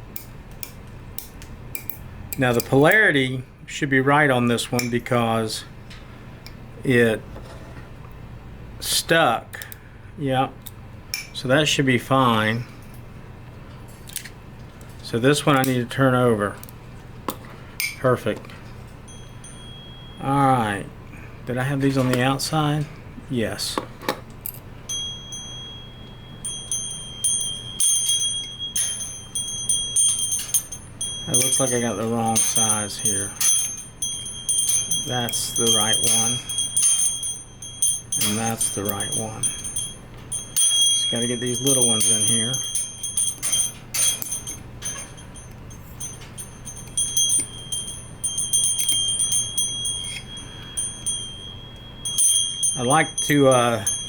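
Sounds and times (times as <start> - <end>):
magnets clicking and snapping together: 0.1 - 2.8, 14.0 - 14.4
magnetic metal parts clicking ringing: 0.1 - 3.2, 9.5 - 9.8, 10.6 - 11.5, 13.7 - 20.8, 21.6 - 22.9, 23.7 - 54.0.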